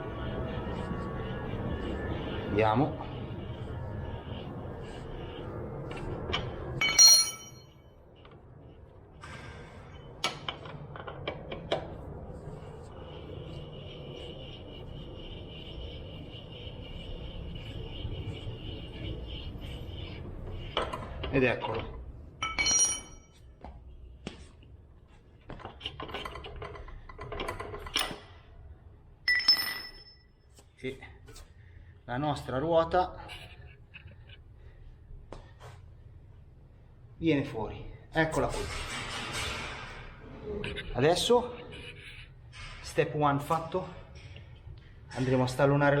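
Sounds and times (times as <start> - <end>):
metal tools clinking: 6.8 - 7.6, 22.4 - 23.2.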